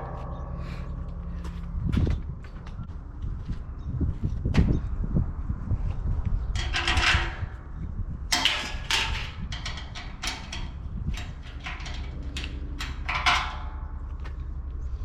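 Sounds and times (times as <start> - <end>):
metal clanks and scrapes: 0.0 - 2.9, 6.5 - 7.7, 8.3 - 14.7
low rumble: 0.0 - 15.0.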